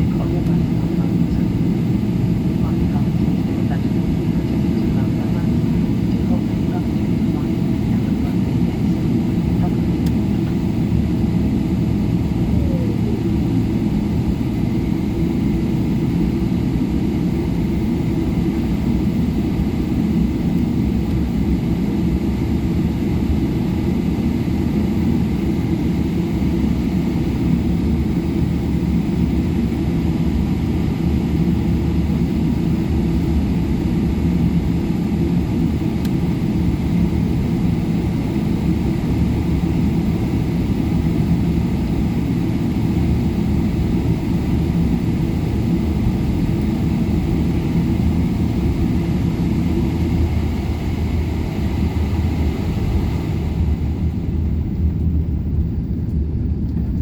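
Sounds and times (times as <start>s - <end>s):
airplane cabin rumble: 0.0s - 57.0s
faint tone sliding downward: 12.4s - 13.5s.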